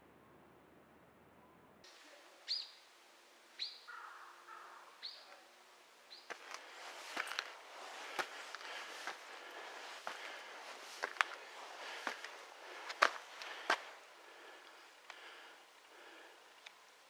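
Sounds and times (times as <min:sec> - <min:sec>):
small bird call notes: 0:02.4 - 0:02.9, 0:03.5 - 0:05.5
crunching footsteps: 0:06.2 - 0:16.8.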